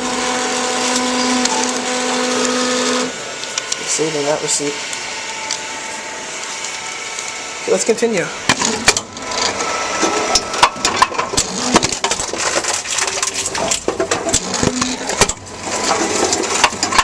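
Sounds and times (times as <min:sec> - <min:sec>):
vending machine crushing containers: 0:08.4 - 0:17.0.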